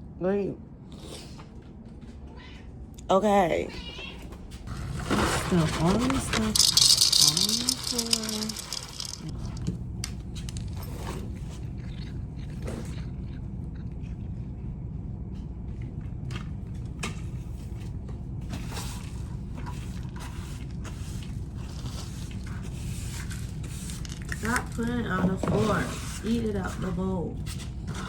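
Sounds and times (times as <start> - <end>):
steady low hum: 4.4 - 28.0
cat crunching dry kibble: 4.7 - 15.4, 18.9 - 25.0.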